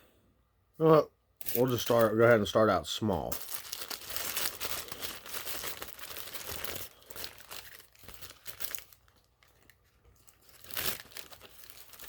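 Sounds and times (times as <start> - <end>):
paper wrapper crinkling: 1.4 - 12.0.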